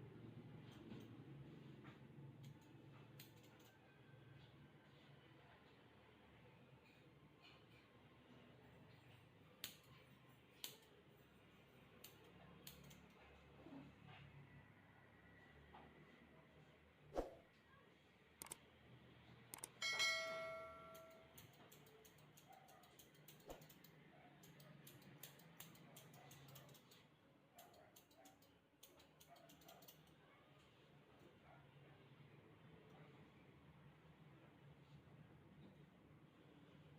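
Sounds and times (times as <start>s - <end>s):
scissors snipping hair: 2.4s - 3.8s, 9.6s - 11.0s, 11.9s - 13.2s, 18.4s - 18.6s, 19.5s - 19.8s, 20.9s - 30.2s
scissors snipping: 18.4s - 18.6s, 20.9s - 27.0s.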